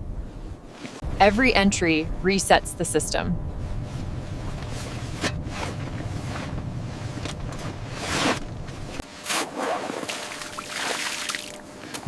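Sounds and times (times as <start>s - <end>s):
low wind rumble: 0.0s - 9.0s.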